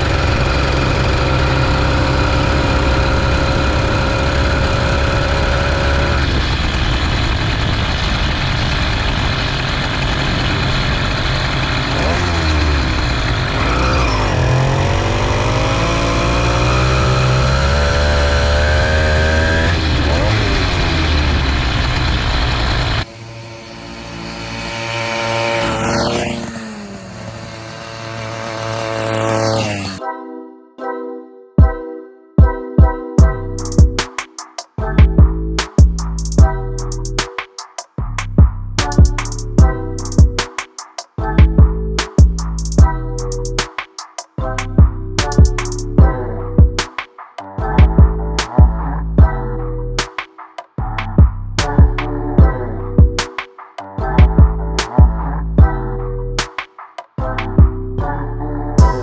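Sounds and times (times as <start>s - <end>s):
engine running: 0.0s - 30.0s
steady whining tone: 0.0s - 30.0s
music: 30.0s - 59.0s
heavy low rumble: 58.8s - 59.0s.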